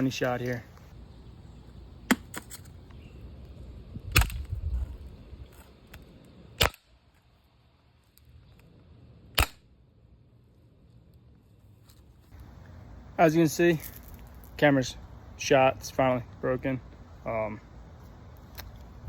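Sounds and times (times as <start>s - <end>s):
sharp gunshots: 4.1s - 4.4s, 9.4s - 9.6s.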